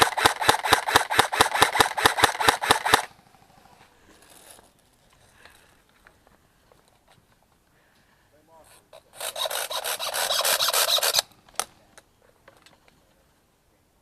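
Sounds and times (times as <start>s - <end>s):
airsoft gun rapid firing: 0.0s - 3.1s, 9.2s - 11.3s.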